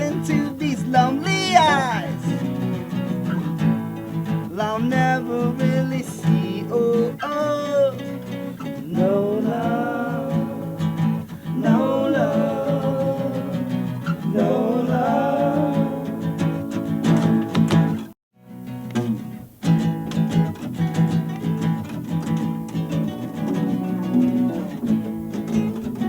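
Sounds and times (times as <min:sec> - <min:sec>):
person singing: 0:00.0 - 0:02.8, 0:04.5 - 0:08.2, 0:08.8 - 0:16.4
strummed acoustic guitar: 0:00.0 - 0:26.0.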